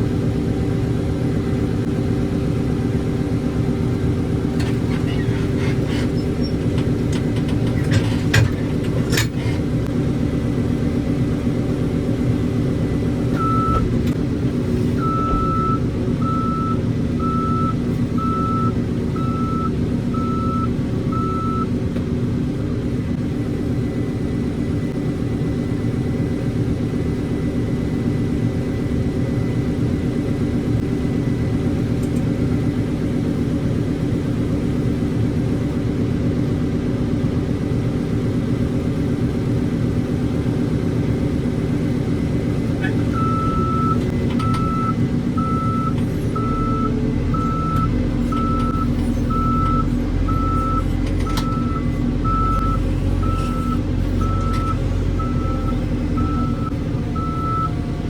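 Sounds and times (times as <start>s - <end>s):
diesel engine running: 0.0s - 58.0s
reversing alarm beeping: 13.4s - 13.8s, 15.0s - 21.7s, 43.2s - 57.9s.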